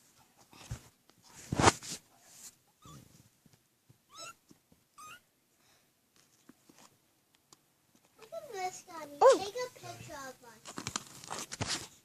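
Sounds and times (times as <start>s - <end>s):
kitten mewing: 4.1s - 4.4s, 5.0s - 5.3s.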